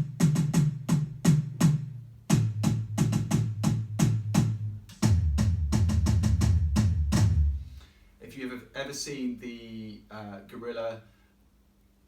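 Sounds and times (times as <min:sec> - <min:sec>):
electronic drum tom hits: 0:00.0 - 0:07.6.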